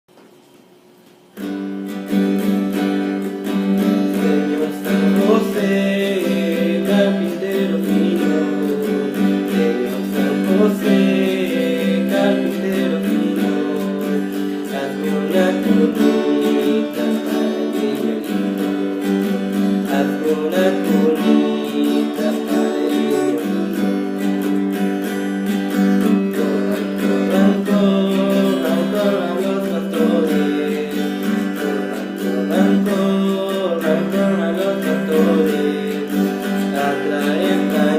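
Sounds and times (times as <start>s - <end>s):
strummed acoustic guitar music: 1.3s - 37.9s.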